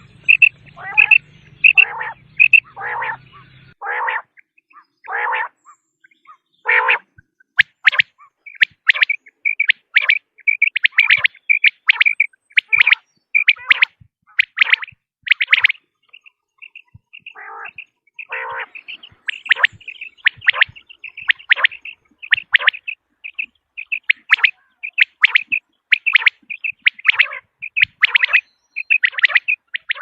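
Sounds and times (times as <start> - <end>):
lower rough quail calls: 0.0 - 30.0
quail high chirping calls: 0.0 - 30.0.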